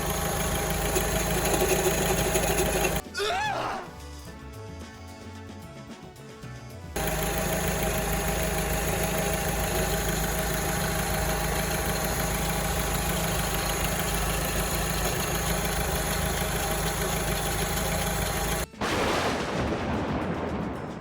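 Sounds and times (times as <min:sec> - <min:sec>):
car engine idling with rattling: 0:00.0 - 0:03.0, 0:07.0 - 0:18.7.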